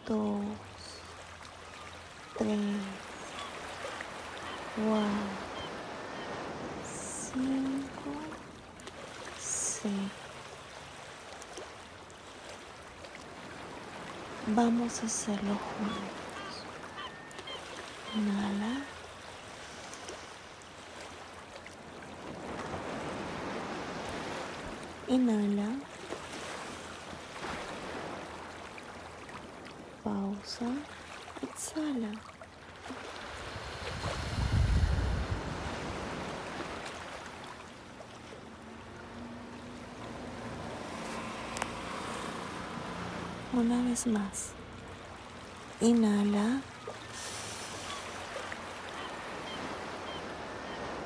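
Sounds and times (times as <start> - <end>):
waves breaking against rocks: 25.7 - 30.0, 32.5 - 45.9.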